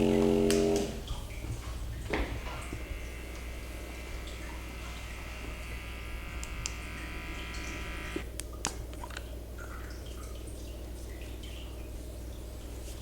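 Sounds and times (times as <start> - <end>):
small electric motor whining: 2.4 - 8.2.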